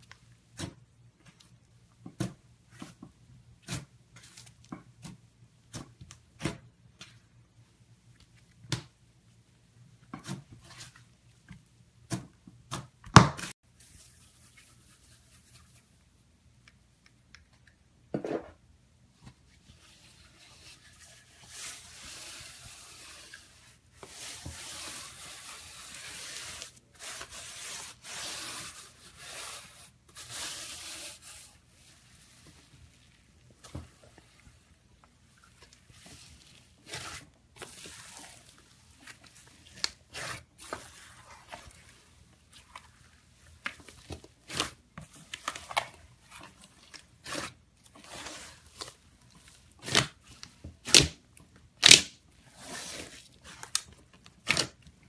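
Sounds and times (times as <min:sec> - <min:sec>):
slime squishing by hand: 0:21.5 - 0:55.0.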